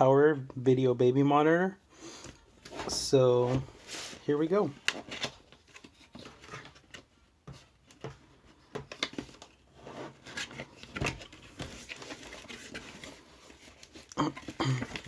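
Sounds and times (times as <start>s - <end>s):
packaging rustling: 2.6s - 7.2s, 7.8s - 15.0s.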